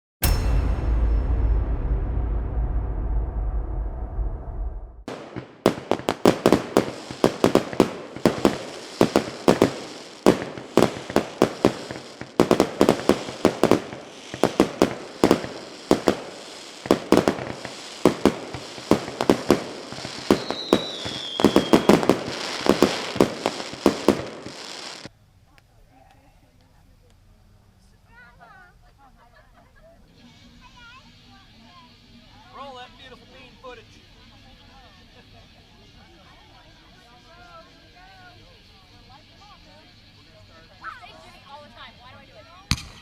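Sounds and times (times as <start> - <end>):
music: 0.2 - 5.1
fireworks bangs echoing: 5.0 - 25.1, 42.7 - 43.0
falling firework whistle: 5.1 - 25.1.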